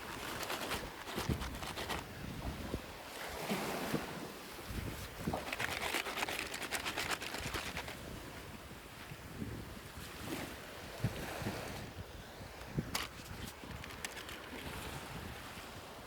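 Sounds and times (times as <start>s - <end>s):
packaging rustling and crinkling: 0.0s - 2.1s, 5.3s - 8.0s, 12.8s - 14.7s.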